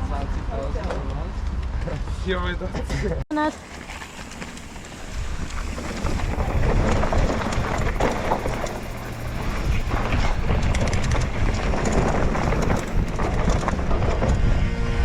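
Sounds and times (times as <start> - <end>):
rattles and clicks: 3.6 - 14.5
wind rushing over microphone: 4.2 - 15.0.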